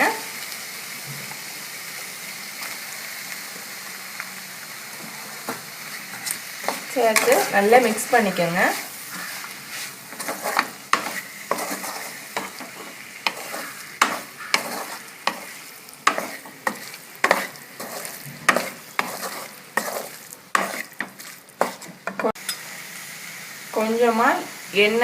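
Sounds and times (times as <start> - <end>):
faint sizzle: 0.0 - 25.0
spoon scraping a frying pan: 5.4 - 22.6.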